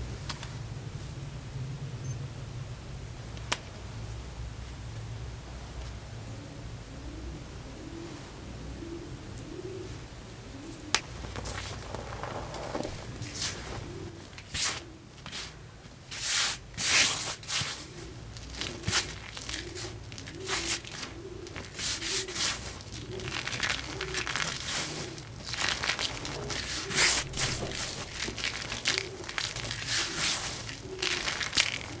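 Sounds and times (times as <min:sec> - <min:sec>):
chalk being crushed and ground: 0:11.0 - 0:13.9, 0:17.6 - 0:32.0.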